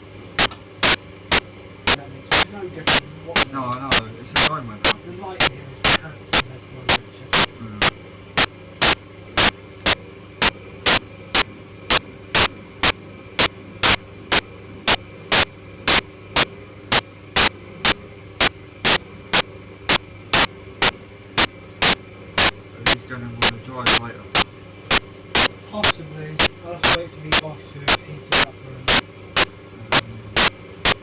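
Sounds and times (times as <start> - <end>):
sharp rhythmic bursts of noise: 0.4 - 31.0.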